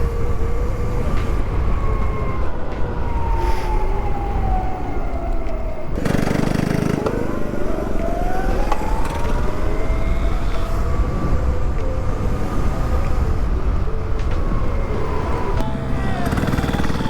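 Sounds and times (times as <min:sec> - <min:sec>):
wind and tyre noise: 0:00.0 - 0:17.0
electric motorbike motor whining: 0:05.9 - 0:17.0.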